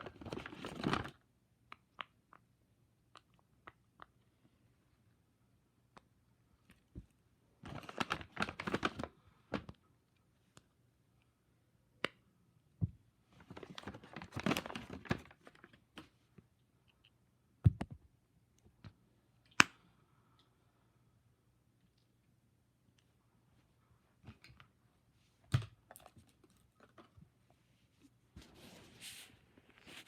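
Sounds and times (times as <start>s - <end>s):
packaging crinkling: 7.7s - 9.1s, 13.5s - 15.8s.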